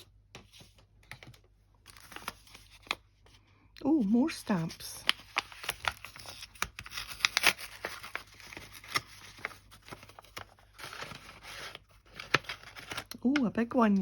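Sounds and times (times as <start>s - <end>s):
plastic packaging crinkling: 4.5s - 13.3s.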